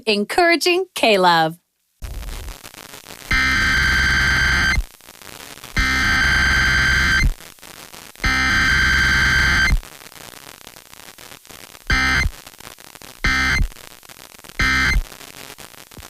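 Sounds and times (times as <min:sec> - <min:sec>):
radio hiss: 0:02.0 - 0:16.0
harsh buzzing digital tones: 0:03.3 - 0:04.9, 0:05.7 - 0:07.4, 0:08.2 - 0:09.8, 0:11.9 - 0:12.4, 0:13.2 - 0:13.8, 0:14.6 - 0:15.1.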